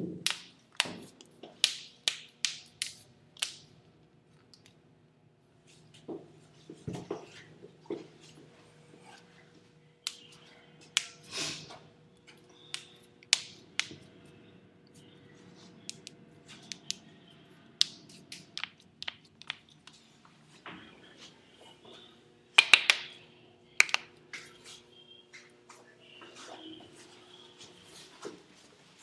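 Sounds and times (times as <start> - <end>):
knuckles cracking: 0.2 - 3.7, 12.6 - 14.0, 15.8 - 17.1, 17.8 - 20.0, 22.6 - 23.1, 23.8 - 24.5.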